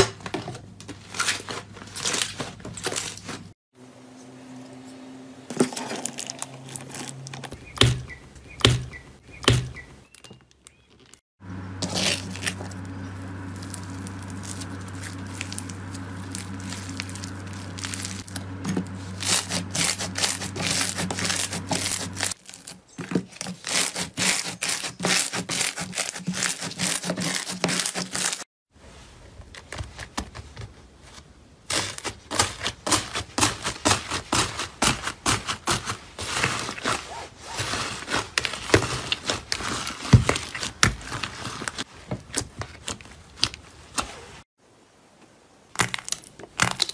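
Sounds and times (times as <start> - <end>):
steady low hum: 11.4 - 22.4.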